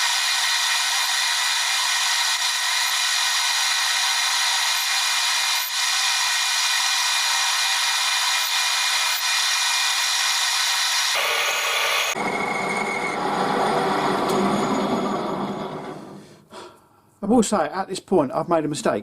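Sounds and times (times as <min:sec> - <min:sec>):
drill boring into brass hissing: 0:00.0 - 0:13.2
metal lathe running: 0:00.0 - 0:16.2.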